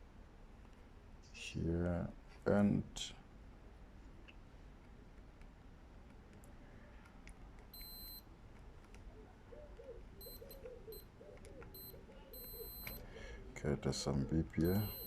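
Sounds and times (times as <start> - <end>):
probe tips clicking: 5.4 - 9.0, 10.2 - 13.0
multimeter beeping: 7.7 - 8.3, 10.2 - 13.1, 14.6 - 15.0.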